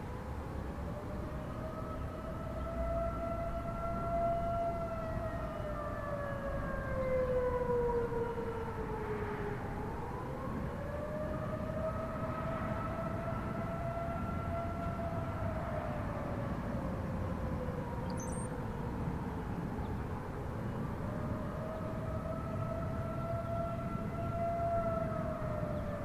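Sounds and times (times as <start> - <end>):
warning siren wailing: 0.1 - 26.0.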